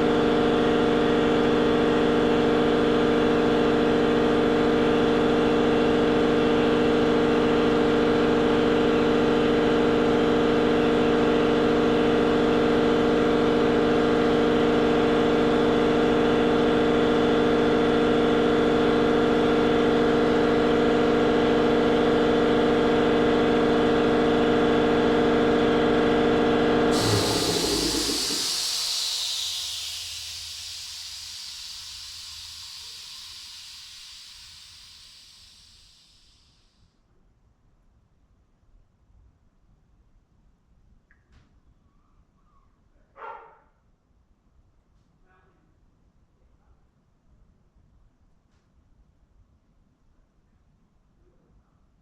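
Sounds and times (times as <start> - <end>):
machine motor running: 10.7 - 36.4
loud hiss: 26.9 - 36.6.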